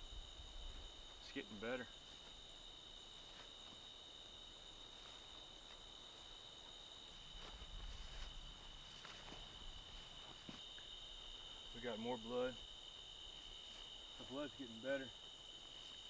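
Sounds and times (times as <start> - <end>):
crickets trilling: 0.0 - 16.0
footsteps rustling leaves: 7.2 - 10.6.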